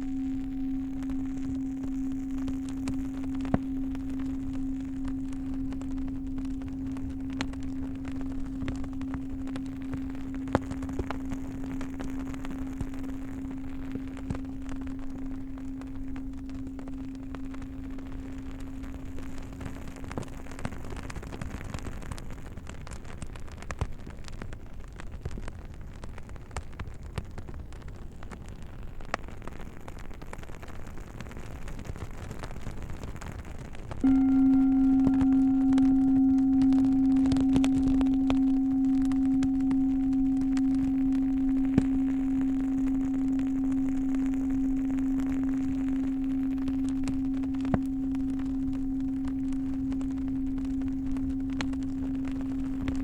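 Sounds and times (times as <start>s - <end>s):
singing bowl hum: 0.0s - 22.7s, 34.0s - 53.0s
campfire crackling and popping: 0.0s - 53.0s.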